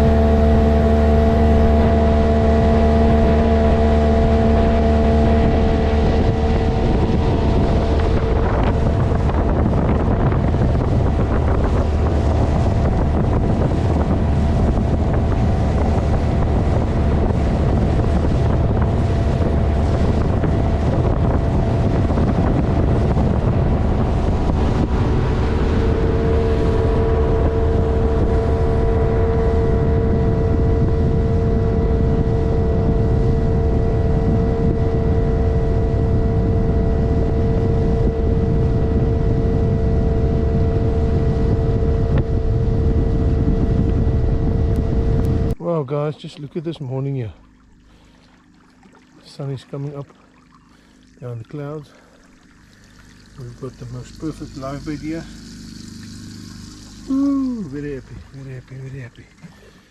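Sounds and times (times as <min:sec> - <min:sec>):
vehicle engine droning: 0:00.0 - 0:45.6.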